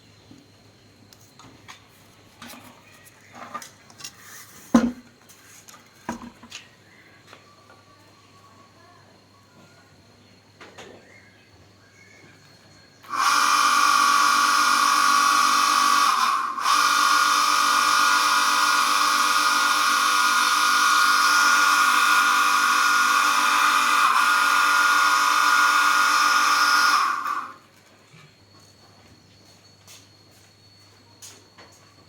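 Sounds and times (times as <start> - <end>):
electric motor whining: 13.0 - 27.6.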